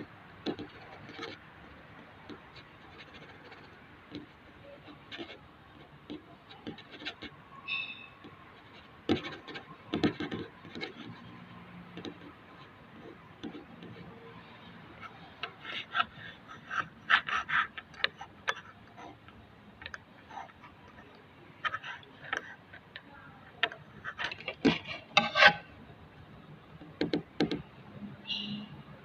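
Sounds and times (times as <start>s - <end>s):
short squeak: 7.6s - 8.2s
knocks and scraping of tools: 23.6s - 25.7s.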